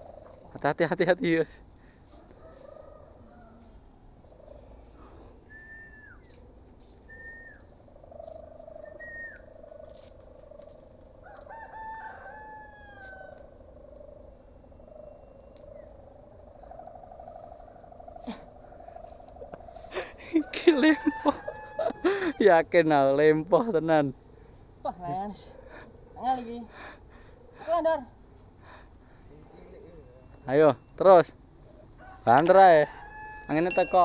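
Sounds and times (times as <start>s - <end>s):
rooster crowing: 2.4s - 3.9s, 11.2s - 13.6s, 19.4s - 22.8s, 32.0s - 34.0s
high bird chirps: 8.6s - 9.5s.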